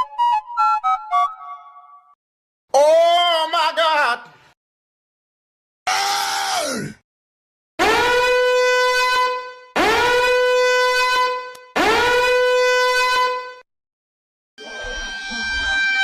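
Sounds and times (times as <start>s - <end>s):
buzzy horn blast: 7.8s - 13.6s, 14.8s - 16.0s.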